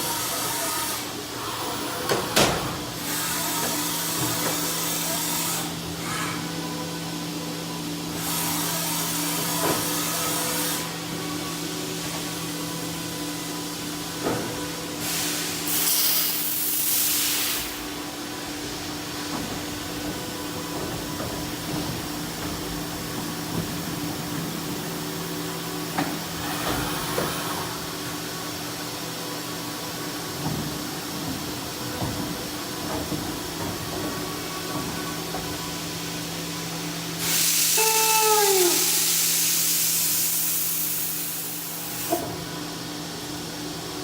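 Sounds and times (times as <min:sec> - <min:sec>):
air hiss bursts: 0:15.0 - 0:17.9, 0:37.2 - 0:42.2.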